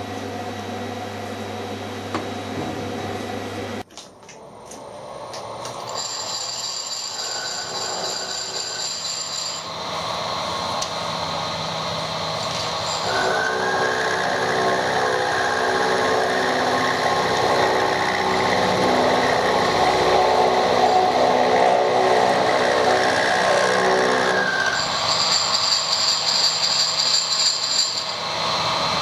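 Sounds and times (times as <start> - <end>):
mechanical hum: 0.0 - 6.4
machine cutting metal: 5.8 - 29.0.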